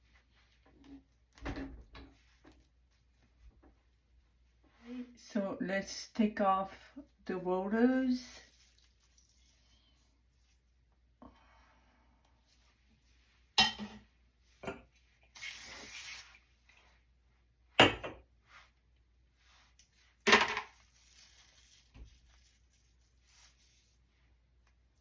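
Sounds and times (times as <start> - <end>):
faint rustling of hair: 2.0 - 13.6, 18.3 - 25.0
short steady hiss: 15.3 - 16.4.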